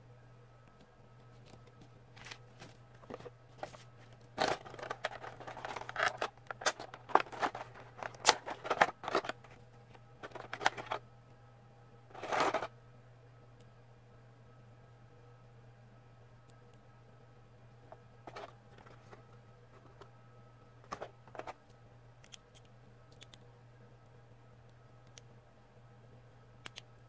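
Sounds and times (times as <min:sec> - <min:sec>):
toy packaging clicks and rustles: 0:04.4 - 0:09.6, 0:10.2 - 0:11.0, 0:12.1 - 0:12.7.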